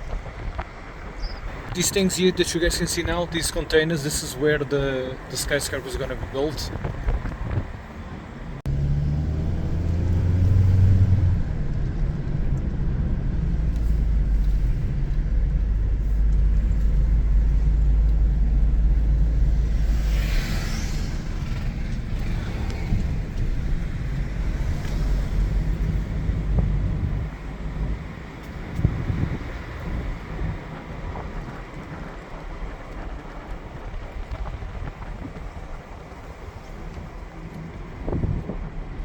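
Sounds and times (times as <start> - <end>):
car engine and road rumble: 0.0 - 39.0.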